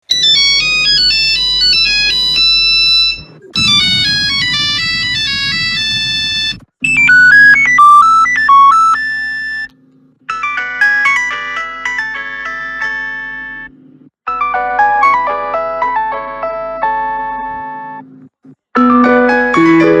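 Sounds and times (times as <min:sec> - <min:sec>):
electronic ringtone melodies: 0:00.1 - 0:09.7, 0:10.3 - 0:13.7, 0:18.8 - 0:20.0.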